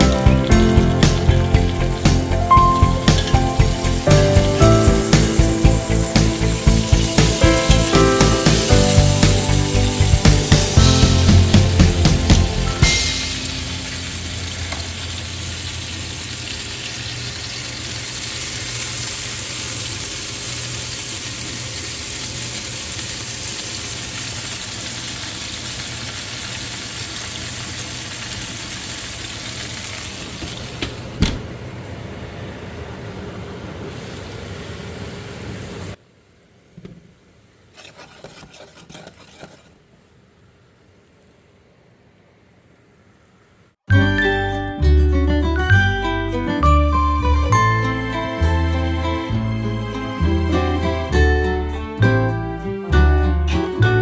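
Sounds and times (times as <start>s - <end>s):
chicken sizzling on a grill: 0.0s - 30.8s.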